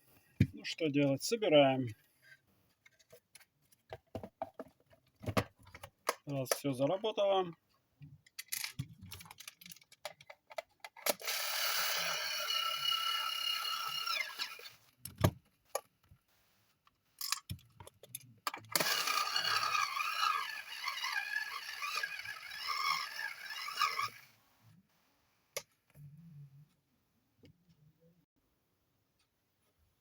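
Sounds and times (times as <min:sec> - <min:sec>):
electric screwdriver whining: 0:11.1 - 0:14.8, 0:18.7 - 0:24.3.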